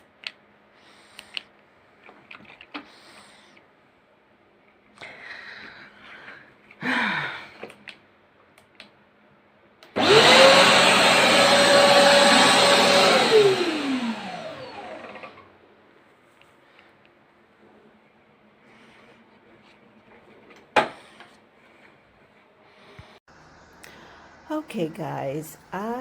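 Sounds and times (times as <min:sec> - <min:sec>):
vacuum motor whining: 0:09.9 - 0:15.5.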